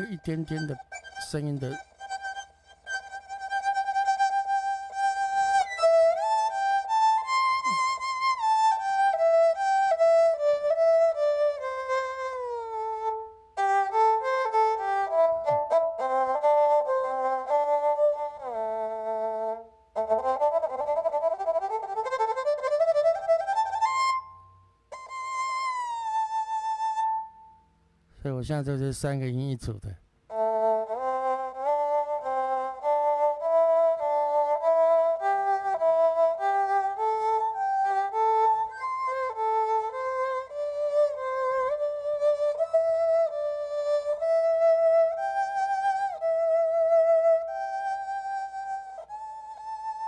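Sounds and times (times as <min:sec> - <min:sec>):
keyboard melody: 0:00.0 - 0:25.2.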